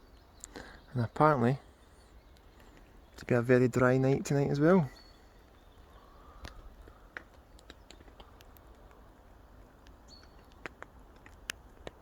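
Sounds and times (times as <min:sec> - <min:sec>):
raindrops ticking on tent fabric: 0:05.4 - 0:12.0.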